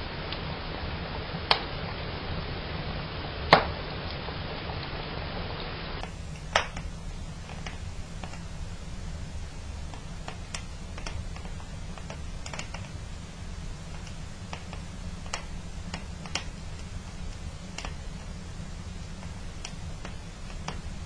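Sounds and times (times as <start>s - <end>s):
fire crackling in fireplace: 0.0s - 21.0s
loud sharp snaps of fire: 0.2s - 2.0s, 2.8s - 21.0s.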